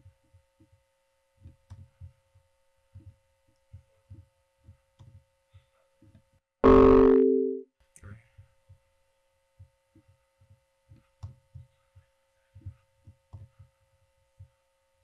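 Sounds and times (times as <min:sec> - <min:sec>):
electronic kick drum thumps: 0:06.6 - 0:07.6.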